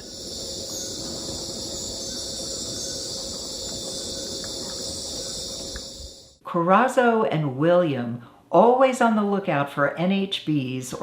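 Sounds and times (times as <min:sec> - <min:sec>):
high-pitched insect buzzing: 0:00.0 - 0:06.4.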